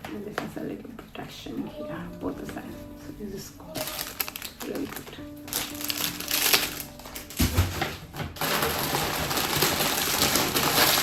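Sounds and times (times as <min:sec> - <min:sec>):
plastic packaging crinkling: 0:03.7 - 0:11.0.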